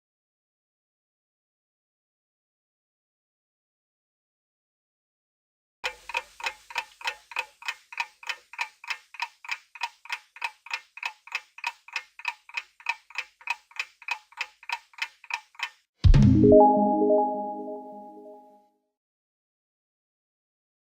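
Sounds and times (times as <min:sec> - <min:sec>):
countdown timer ticking: 0:05.9 - 0:18.4.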